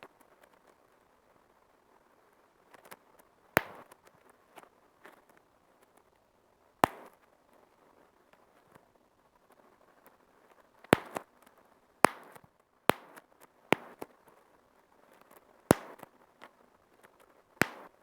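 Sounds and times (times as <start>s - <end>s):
bubble wrap popping: 3.6s - 3.8s, 6.8s - 7.1s, 11.0s - 11.2s, 12.1s - 13.2s, 13.8s - 14.1s, 15.7s - 16.0s, 17.6s - 18.0s.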